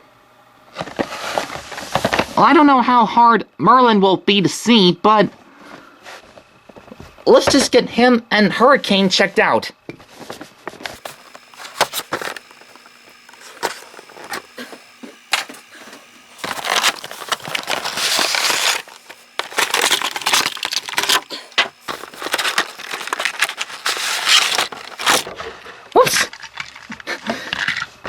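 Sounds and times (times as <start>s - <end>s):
cardboard and plastic rustling: 10.2s - 28.0s.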